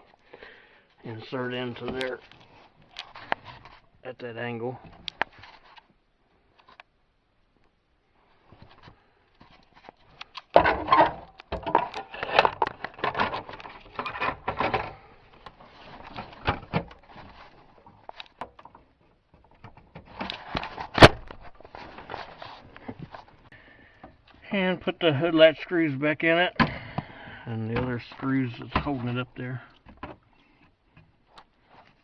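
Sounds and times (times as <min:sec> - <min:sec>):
hard plastic rattling and knocking: 0:10.5 - 0:15.0, 0:15.9 - 0:22.2.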